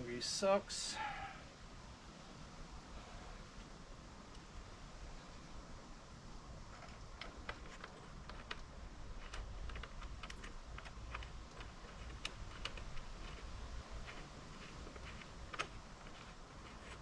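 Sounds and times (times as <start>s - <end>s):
small metal parts clicking: 6.7s - 17.0s.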